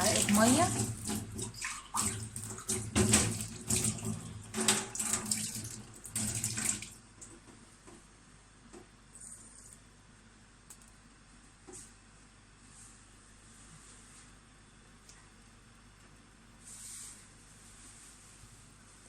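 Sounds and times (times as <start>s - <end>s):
water running and splashing: 0.0s - 7.0s.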